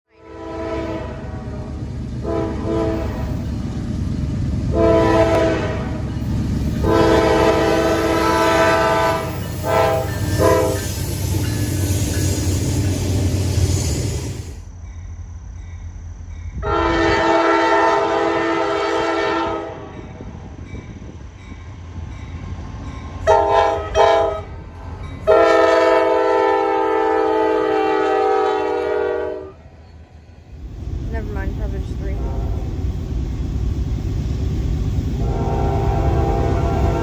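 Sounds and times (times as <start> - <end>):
locomotive air horn: 0.1 - 3.4, 4.7 - 6.0, 6.8 - 11.0, 16.6 - 19.9, 23.2 - 24.5, 25.2 - 29.6, 35.2 - 37.0
low train rumble: 0.1 - 37.0
rush of passing train: 0.1 - 37.0.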